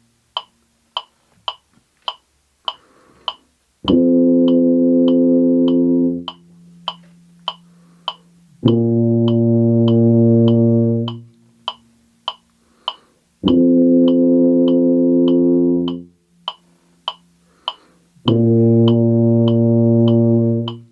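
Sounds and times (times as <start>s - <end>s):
metronome clicking: 0.3s - 20.9s
tuba sustained notes: 3.8s - 6.9s, 8.5s - 11.4s, 13.4s - 16.3s, 18.2s - 20.9s.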